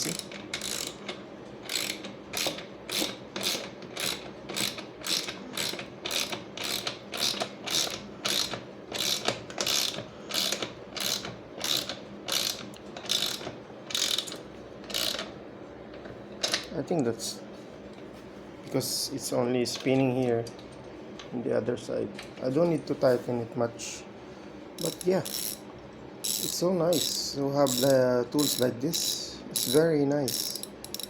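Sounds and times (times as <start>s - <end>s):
hand ratchet clicking: 0.0s - 15.3s, 24.8s - 25.6s, 26.2s - 31.0s.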